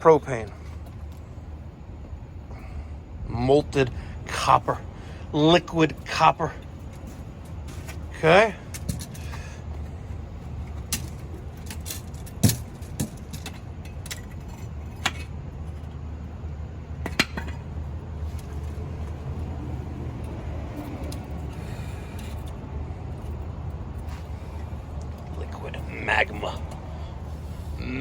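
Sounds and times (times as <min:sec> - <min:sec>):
steady low rumble: 0:00.0 - 0:28.0
metal clinks and knocks: 0:06.6 - 0:16.1, 0:16.9 - 0:19.1.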